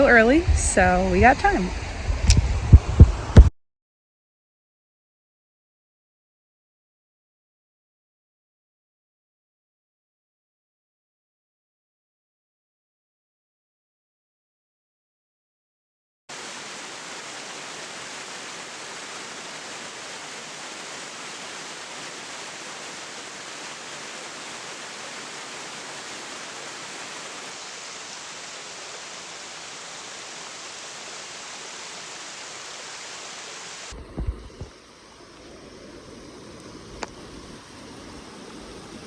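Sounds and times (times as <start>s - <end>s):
water rushing: 0.0s - 3.5s, 16.3s - 39.0s.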